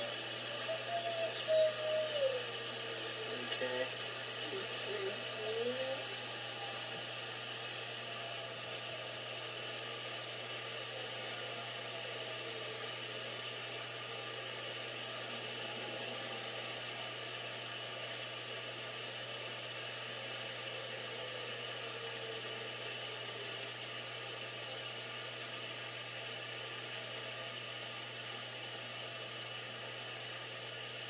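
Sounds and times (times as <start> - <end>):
distant siren wailing: 0.0 - 23.6.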